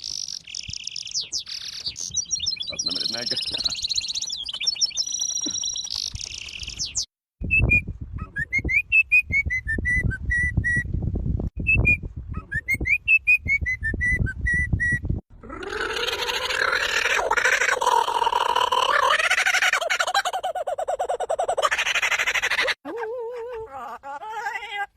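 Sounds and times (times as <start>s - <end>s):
high chirping: 0.0s - 7.1s.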